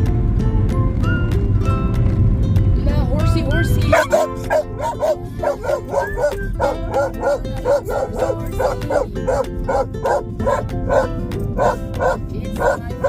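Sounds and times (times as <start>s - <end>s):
background music: 0.0s - 13.0s
dog barking rapidly: 3.9s - 13.0s.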